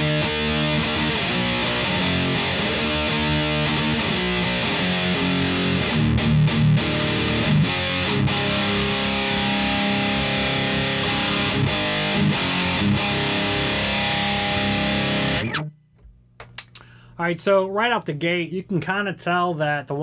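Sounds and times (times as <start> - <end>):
distorted electric guitar riffing: 0.0 - 15.7.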